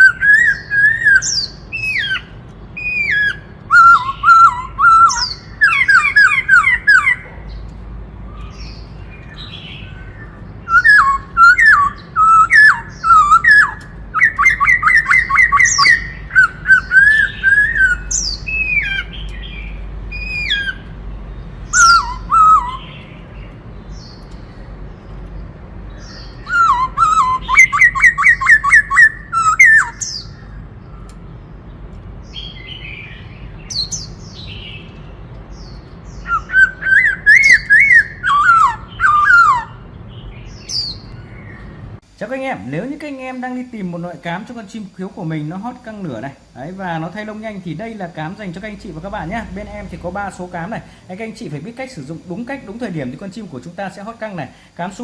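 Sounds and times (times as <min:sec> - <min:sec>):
bird singing whistled notes: 0:00.0 - 0:07.7, 0:08.3 - 0:24.7, 0:25.9 - 0:31.3, 0:32.2 - 0:41.8.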